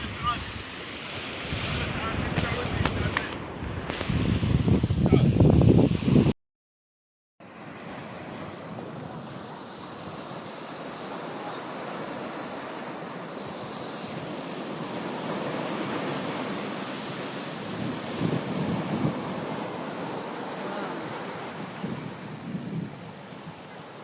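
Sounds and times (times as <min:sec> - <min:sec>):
sea waves washing onto beach: 0:00.0 - 0:06.3, 0:07.4 - 0:24.0
wind on microphone: 0:00.0 - 0:06.4, 0:07.6 - 0:24.0.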